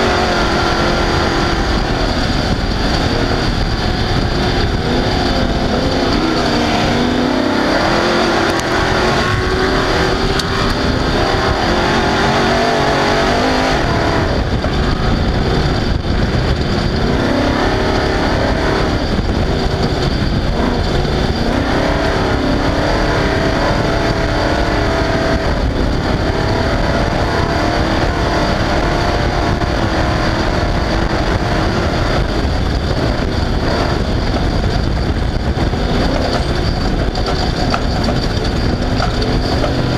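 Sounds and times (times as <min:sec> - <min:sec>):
race car engine revving: 0:00.0 - 0:39.9
rattling and tyre noise: 0:00.0 - 0:39.9.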